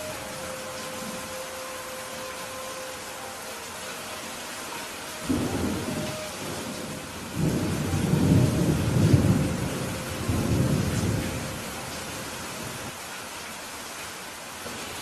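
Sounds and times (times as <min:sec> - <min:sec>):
steady rain: 0:00.0 - 0:15.0
thunder rumbling: 0:05.2 - 0:12.9.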